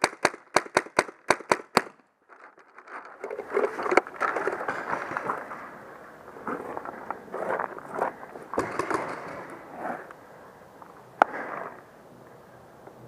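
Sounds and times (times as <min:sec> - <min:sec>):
paintball marker firing: 0:00.0 - 0:02.0
rustling and crackling: 0:01.8 - 0:10.2.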